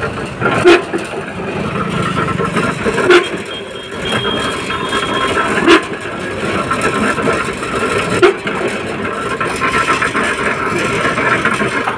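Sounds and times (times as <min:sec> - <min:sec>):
heavy machinery engine running: 0:00.0 - 0:11.9.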